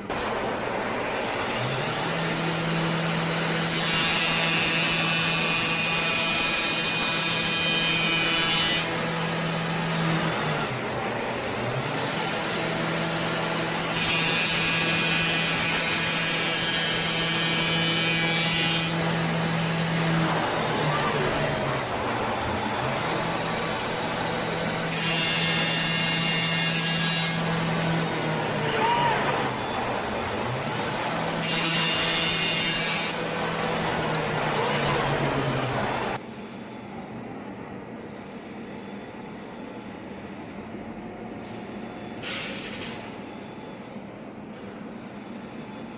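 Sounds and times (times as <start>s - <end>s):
grinder motor hum: 0.0s - 36.2s.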